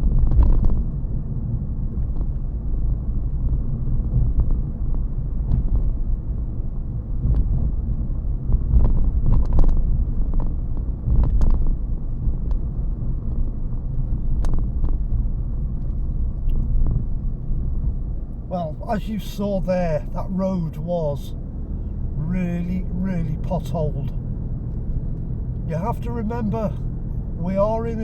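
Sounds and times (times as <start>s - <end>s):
tyre and road rumble: 15.9s - 28.0s.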